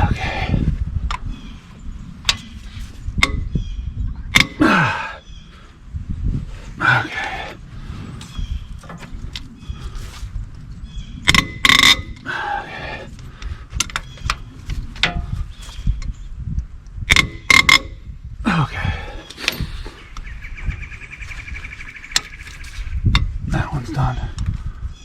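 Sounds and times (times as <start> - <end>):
sharp metallic knocks: 4.4 - 4.6, 17.1 - 18.0.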